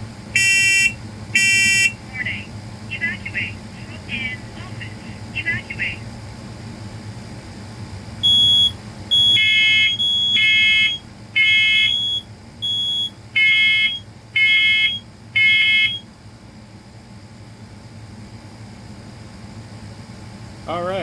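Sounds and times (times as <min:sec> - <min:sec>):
higher single-pitched alarm beep: 0:00.4 - 0:02.0, 0:08.2 - 0:16.0
smoke alarms beeping: 0:00.4 - 0:02.0, 0:08.2 - 0:16.0.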